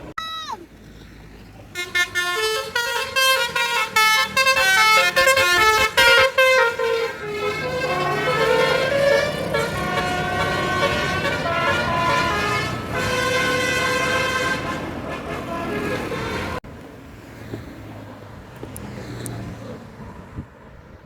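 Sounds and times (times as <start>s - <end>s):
multi-tone bus horn melody: 1.7s - 16.6s.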